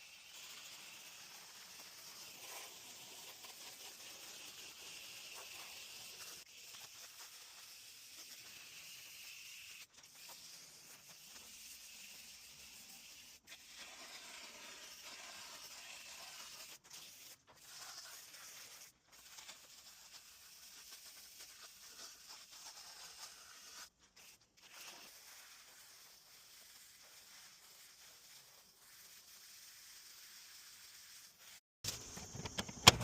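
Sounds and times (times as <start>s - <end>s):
hissing spray on metal coil: 0.0s - 32.3s.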